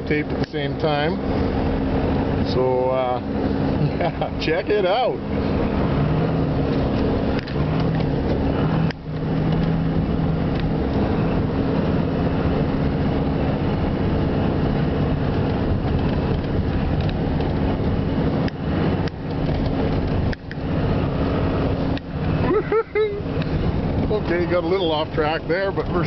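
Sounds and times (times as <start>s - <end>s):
car engine running: 0.0s - 26.0s
tyre and road noise: 0.0s - 26.0s.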